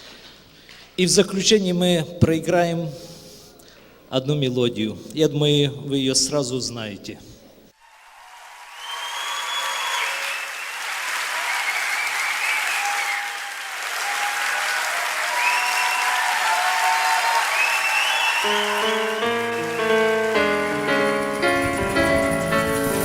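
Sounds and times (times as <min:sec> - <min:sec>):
audience applauding: 0:07.8 - 0:21.8
high gliding musical tones: 0:18.4 - 0:23.0
instrumental music with chords: 0:18.4 - 0:23.0.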